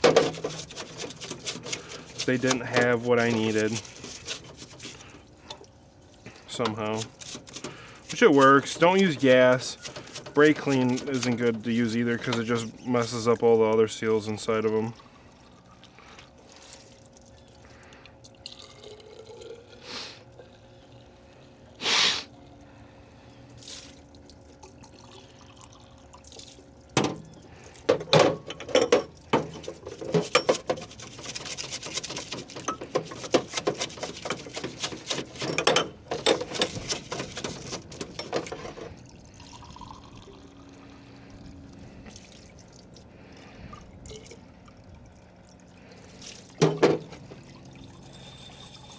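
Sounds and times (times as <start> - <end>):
liquid splashing and dripping: 14.7 - 19.4, 23.6 - 27.9.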